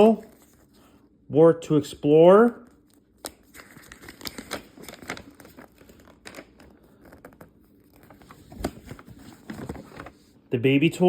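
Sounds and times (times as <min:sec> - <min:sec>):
paper rustling and crinkling: 0:00.0 - 0:00.9, 0:02.5 - 0:10.4.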